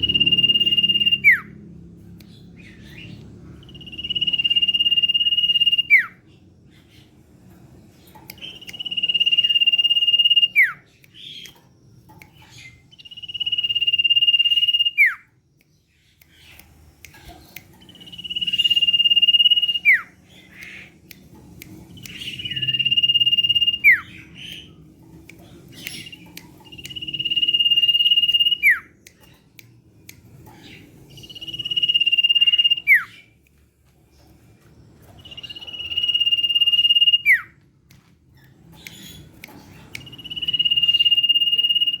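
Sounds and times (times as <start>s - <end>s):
bird whistling song: 0.0s - 1.6s, 2.6s - 6.2s, 8.3s - 11.6s, 12.2s - 15.4s, 17.8s - 24.7s, 25.7s - 29.3s, 30.5s - 33.4s, 35.0s - 37.6s, 38.8s - 42.0s.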